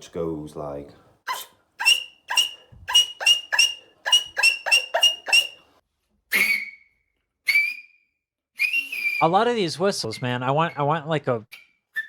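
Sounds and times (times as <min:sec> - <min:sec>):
high-pitched mouth whistle blasts: 0:01.8 - 0:05.6, 0:06.3 - 0:09.4, 0:11.5 - 0:12.0.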